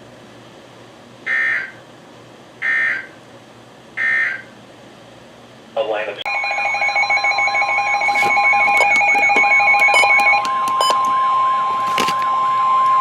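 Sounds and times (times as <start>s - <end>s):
steady alarm tone: 6.3s - 13.0s
fast electronic beeping: 7.2s - 11.1s
repeating warble: 8.0s - 11.0s.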